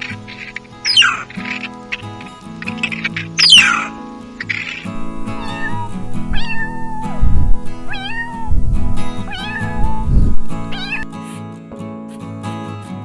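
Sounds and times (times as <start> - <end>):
cat meowing: 0.9 - 1.6, 2.7 - 11.1.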